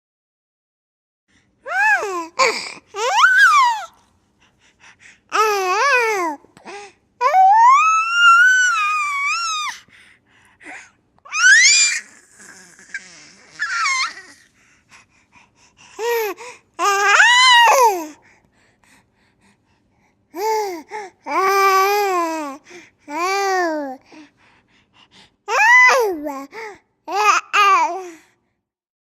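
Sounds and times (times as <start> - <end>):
baby laughing and squealing: 1.7 - 3.9, 11.3 - 14.4.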